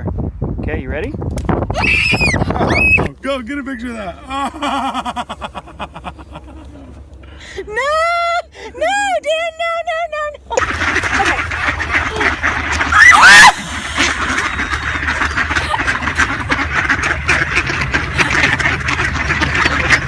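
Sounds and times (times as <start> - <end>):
ducks quacking: 10.6 - 20.0
loud short duck cry: 10.6 - 20.0.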